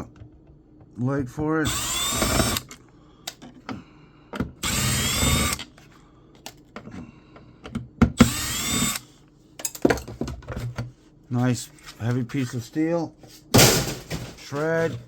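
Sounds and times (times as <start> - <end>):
power drill running: 1.6 - 2.7, 4.6 - 5.6, 8.2 - 9.1.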